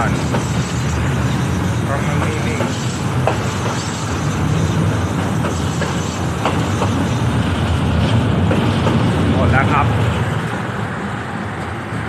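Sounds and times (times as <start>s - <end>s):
train rumbling on rails: 0.0s - 12.0s.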